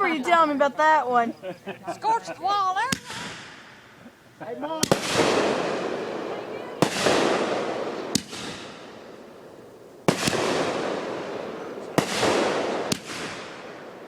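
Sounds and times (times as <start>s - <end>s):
fireworks bangs with rumble: 2.8s - 4.0s, 4.7s - 14.0s.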